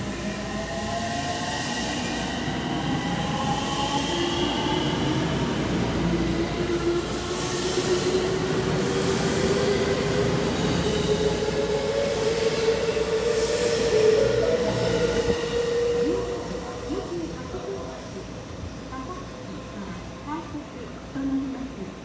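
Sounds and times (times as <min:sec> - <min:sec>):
train traction motors whining: 0:04.6 - 0:20.2.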